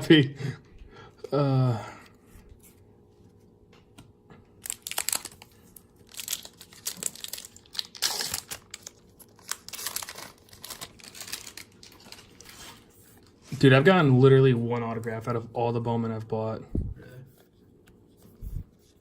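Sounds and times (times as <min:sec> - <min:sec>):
foil wrapper tearing and crinkling: 0:04.6 - 0:12.9.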